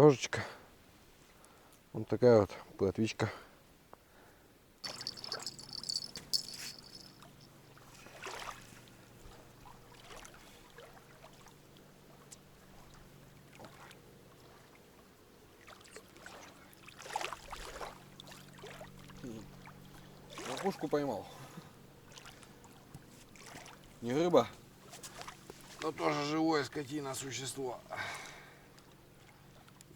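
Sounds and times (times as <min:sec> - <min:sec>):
rustling or splashing: 0:04.8 - 0:07.5.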